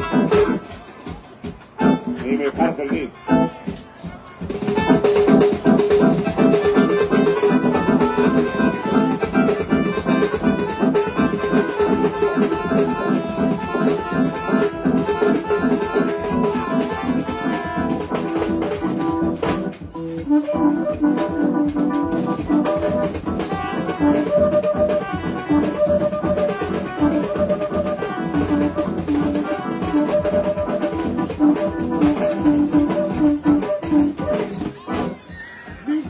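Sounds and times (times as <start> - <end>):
loud dance music: 0.0 - 19.6
brass: 0.0 - 35.2
steady drum beat: 0.0 - 36.0.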